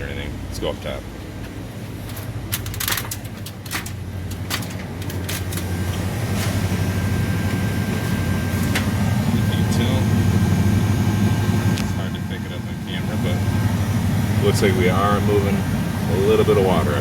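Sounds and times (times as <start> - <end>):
low machinery hum: 0.0 - 17.0.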